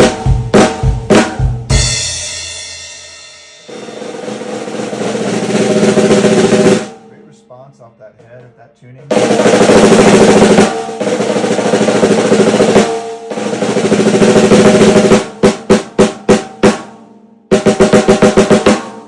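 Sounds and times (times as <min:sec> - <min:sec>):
snare drum rolls: 0:00.0 - 0:01.9, 0:03.7 - 0:07.0, 0:09.1 - 0:19.0
snare drum single strokes: 0:09.1 - 0:16.9, 0:17.5 - 0:19.0.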